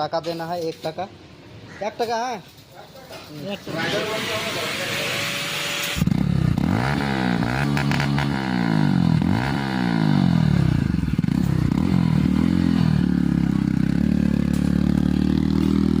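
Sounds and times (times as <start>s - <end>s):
motorcycle engine revving and idling: 3.7s - 16.0s.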